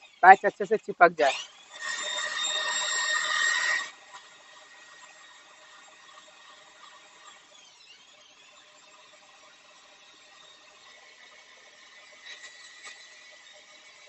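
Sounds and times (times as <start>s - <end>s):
electric drill abrading rubber: 1.2s - 6.4s.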